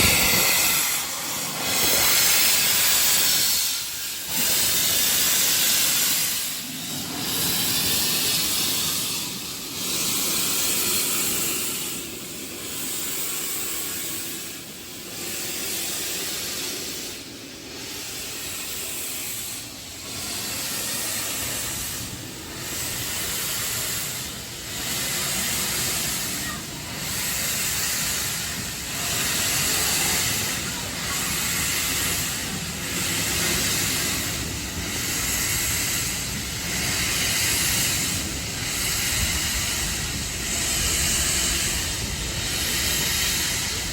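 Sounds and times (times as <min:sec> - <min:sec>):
steam locomotive hissing: 0:00.0 - 0:43.9.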